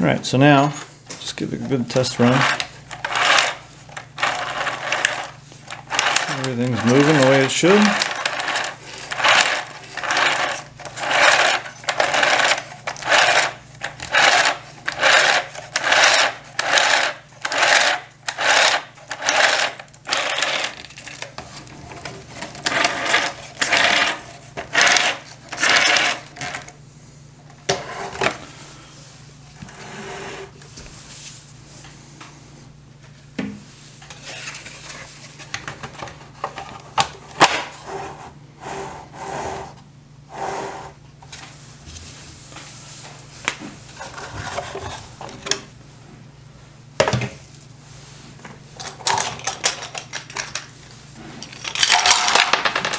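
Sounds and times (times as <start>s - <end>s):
gear train whirring and rattling: 1.2s - 26.7s.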